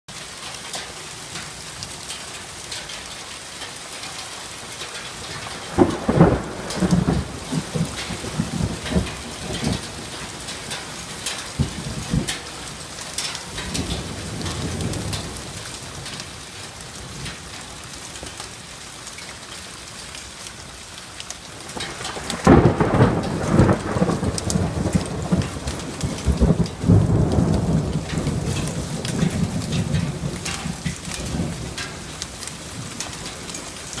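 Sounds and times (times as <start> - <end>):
heavy rain: 0.1 - 34.0
thunder clap and rumble: 5.2 - 17.6, 21.6 - 34.0.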